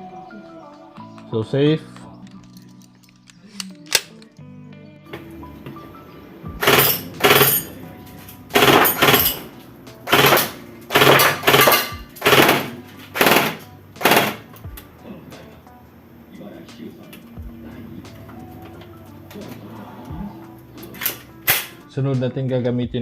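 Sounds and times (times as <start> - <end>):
airsoft gun automatic bursts: 6.6 - 7.7, 8.6 - 9.4, 10.1 - 14.5.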